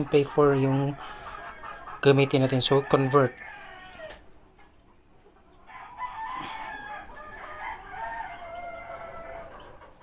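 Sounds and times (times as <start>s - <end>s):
rooster crowing: 2.6s - 4.2s, 5.7s - 9.8s.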